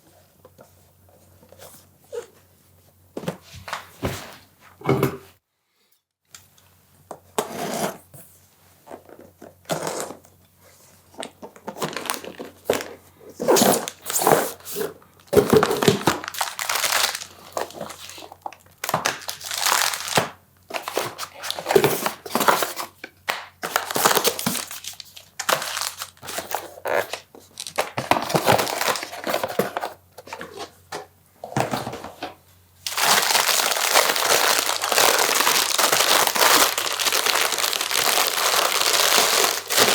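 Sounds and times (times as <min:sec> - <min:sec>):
packaging crinkling and rustling: 0:11.1 - 0:23.0, 0:23.6 - 0:30.8, 0:31.6 - 0:39.9.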